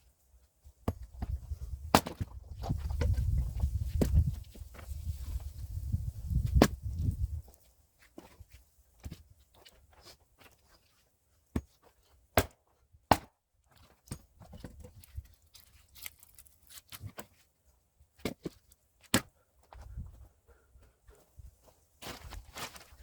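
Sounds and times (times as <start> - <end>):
axe splitting firewood: 0.8 - 4.3, 6.4 - 7.0, 11.5 - 17.4, 18.2 - 19.4.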